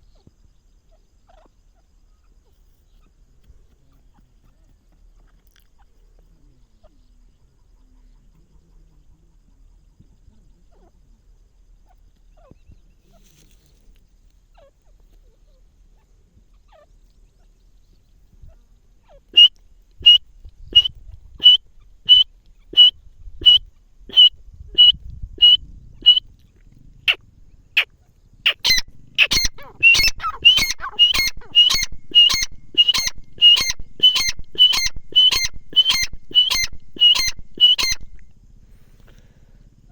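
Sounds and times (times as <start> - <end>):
francolin calling: 14.5 - 26.3, 27.1 - 39.4.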